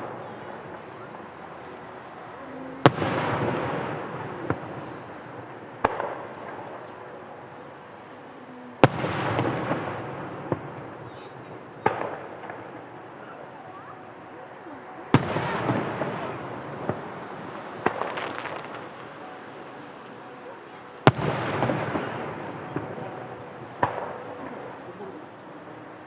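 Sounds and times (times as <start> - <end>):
firework booms: 0.0 - 7.6, 8.8 - 13.5, 15.1 - 24.8
small firework pops: 15.1 - 20.2.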